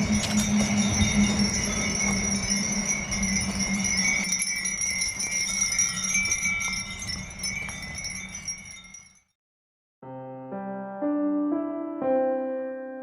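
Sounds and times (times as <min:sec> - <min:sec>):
wind chimes tinkling: 0:00.0 - 0:09.4.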